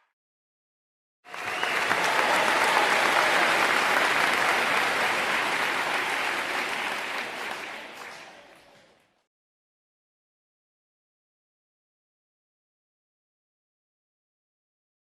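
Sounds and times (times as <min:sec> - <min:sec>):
crowd applause: 0:01.3 - 0:09.3.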